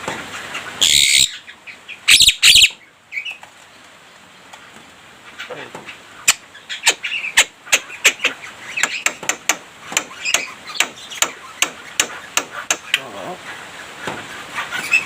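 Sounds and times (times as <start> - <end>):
myna bird chirping: 0.5 - 15.0
sharp knocks: 8.8 - 12.9.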